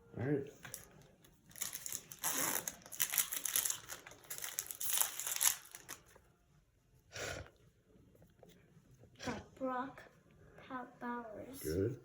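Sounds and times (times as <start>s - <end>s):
plastic foil wrapper crinkling: 0.7s - 6.2s.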